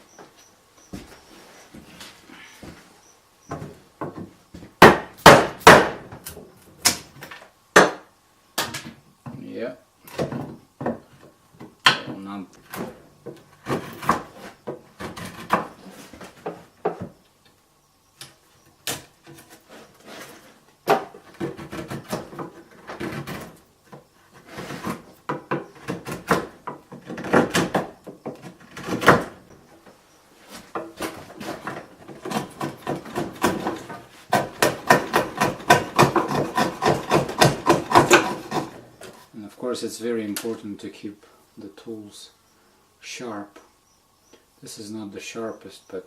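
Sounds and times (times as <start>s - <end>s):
chisel scraping wood: 13.5s - 16.2s, 19.2s - 23.6s, 24.3s - 29.4s, 30.4s - 39.3s.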